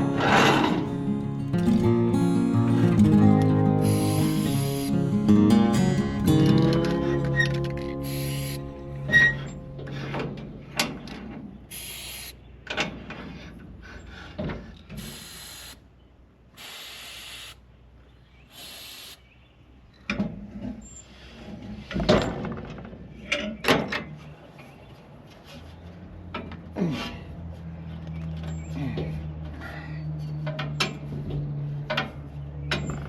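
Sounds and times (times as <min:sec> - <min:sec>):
short bursts of hissing: 0:03.8 - 0:05.0, 0:08.0 - 0:08.7, 0:11.7 - 0:12.4, 0:15.0 - 0:15.8, 0:16.6 - 0:17.6, 0:18.5 - 0:19.3
knocks and clunks of tools: 0:09.8 - 0:11.5, 0:12.6 - 0:13.7, 0:20.0 - 0:20.8, 0:21.5 - 0:24.2.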